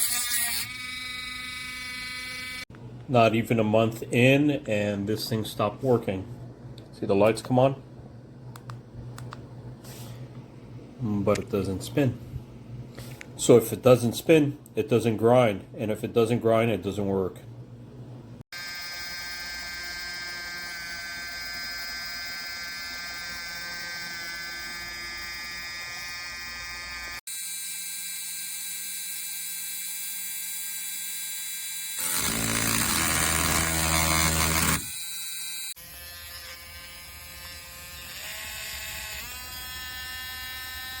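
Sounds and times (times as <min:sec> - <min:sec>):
rotary tool motor whining: 0:00.0 - 0:02.7, 0:18.6 - 0:41.0.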